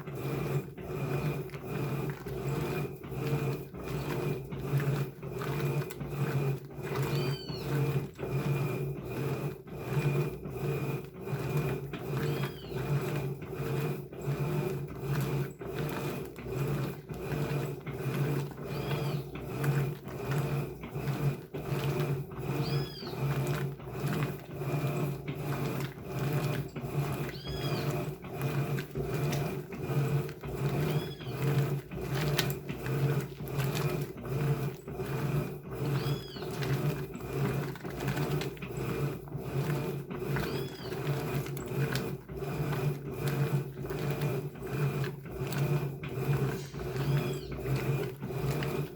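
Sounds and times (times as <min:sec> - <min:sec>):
washing machine agitating: 0:00.0 - 0:48.9.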